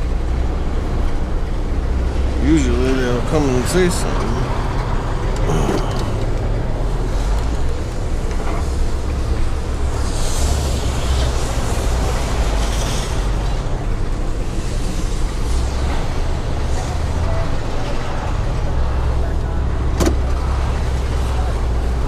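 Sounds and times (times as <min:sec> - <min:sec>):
vehicle engine idling: 0:00.0 - 0:22.0
hiss: 0:08.6 - 0:13.6.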